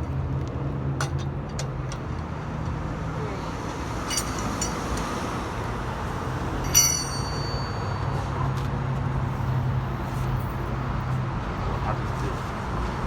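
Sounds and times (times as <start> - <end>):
road traffic noise: 0.0 - 13.0
metal tool striking metal: 4.1 - 5.2, 6.6 - 8.3.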